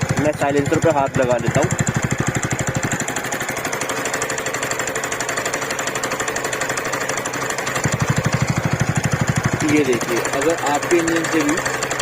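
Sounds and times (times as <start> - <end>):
rapid engine ticking: 0.0 - 12.0
scooter engine idling: 0.0 - 12.0.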